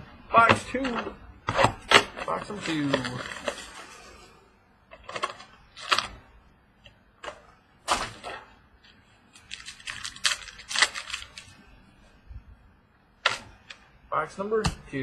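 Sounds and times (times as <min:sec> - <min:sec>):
card packaging clicks and rustles: 0:00.4 - 0:04.1, 0:04.9 - 0:06.3, 0:07.2 - 0:11.6.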